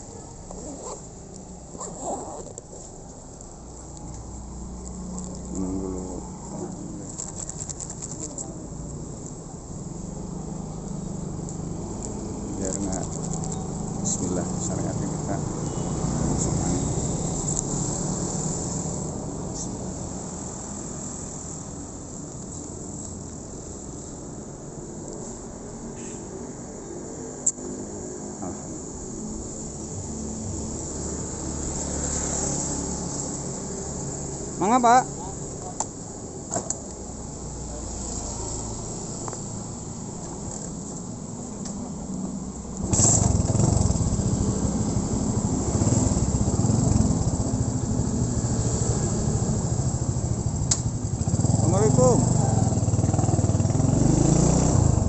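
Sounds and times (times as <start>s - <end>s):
crickets chirring: 12.2s - 17.9s
motorcycle engine revving: 42.8s - 55.0s.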